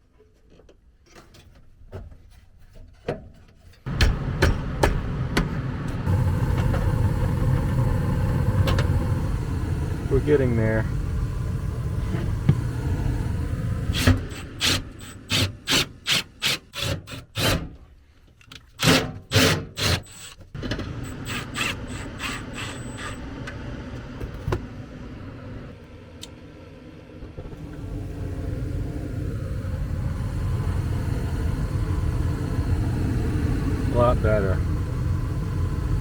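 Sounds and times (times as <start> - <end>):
furnace low rumble: 3.9 - 15.7, 20.5 - 36.0.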